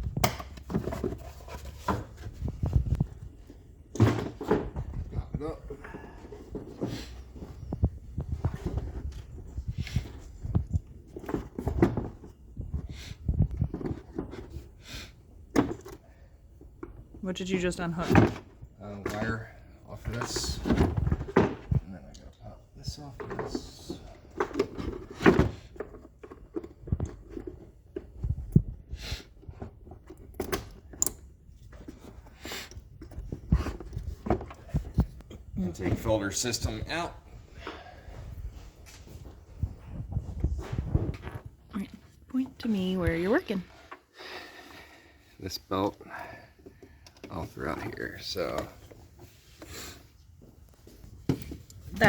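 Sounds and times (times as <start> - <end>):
tools clicking and clunking on engine parts: 23.2 - 35.5.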